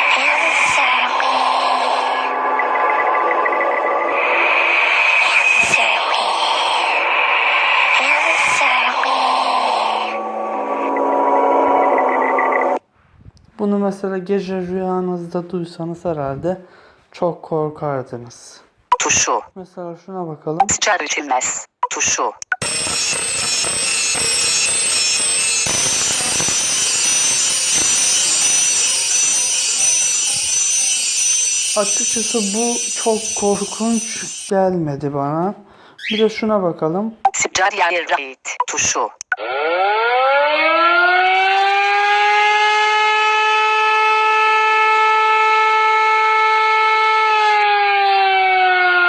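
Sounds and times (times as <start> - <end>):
air-raid siren wailing: 0.0 - 12.8, 22.6 - 34.5, 39.4 - 49.0
harsh grinding noise: 0.0 - 12.8, 22.6 - 34.5
thin high ringing tones: 22.6 - 34.5.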